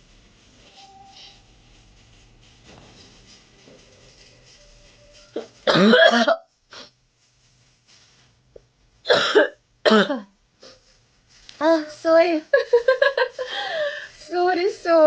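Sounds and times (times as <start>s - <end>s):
woman coughing hard: 5.6s - 6.9s, 9.1s - 10.3s.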